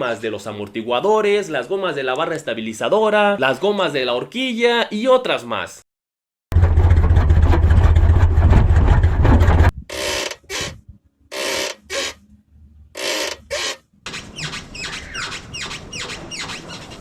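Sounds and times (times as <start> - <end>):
low rumble with rapid rattling: 6.5 - 10.0
rubber bushings squeaking: 9.9 - 12.3, 13.0 - 17.0.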